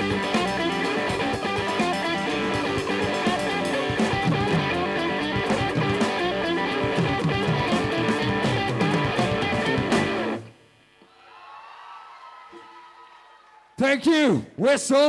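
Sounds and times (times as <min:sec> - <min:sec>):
rock band playing: 0:00.0 - 0:10.5.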